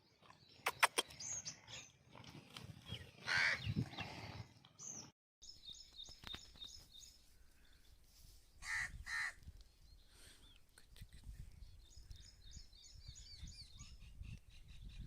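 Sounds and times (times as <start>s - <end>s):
small birds chirping: 2.8s - 8.2s, 8.9s - 15.0s
crow cawing: 3.3s - 3.6s, 8.6s - 9.4s.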